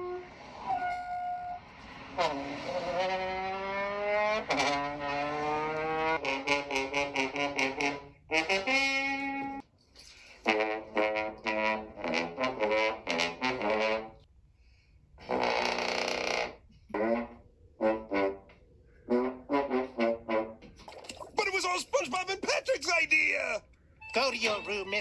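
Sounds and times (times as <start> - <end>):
trombone playing: 2.2 - 9.6, 10.4 - 14.3, 15.2 - 20.7, 24.0 - 25.0.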